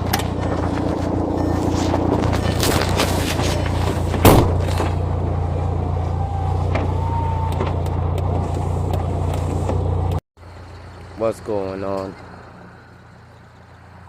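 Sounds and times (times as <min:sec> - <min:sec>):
car engine idling: 0:00.0 - 0:13.8
sharp thump: 0:04.0 - 0:05.0.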